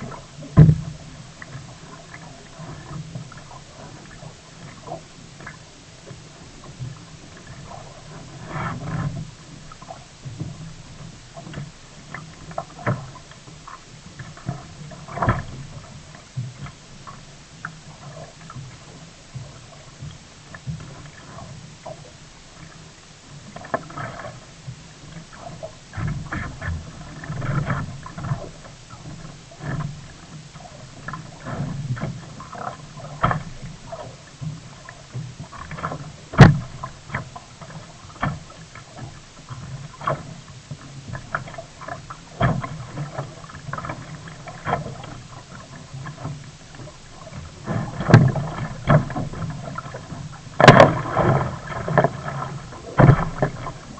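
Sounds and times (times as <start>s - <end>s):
paddle strokes splashing: 0.0s - 53.9s
water sloshing against hull: 0.0s - 53.9s
knocks on kayak: 0.6s - 0.9s, 36.4s - 36.7s, 50.6s - 52.1s.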